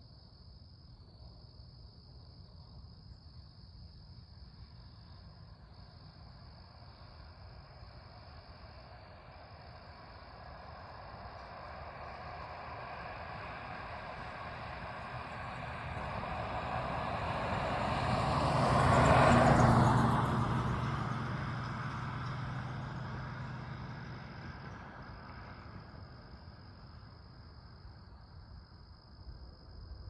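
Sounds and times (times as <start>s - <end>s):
insects chirping: 0.1s - 12.9s, 23.1s - 30.0s
vehicle passing by: 10.4s - 26.7s.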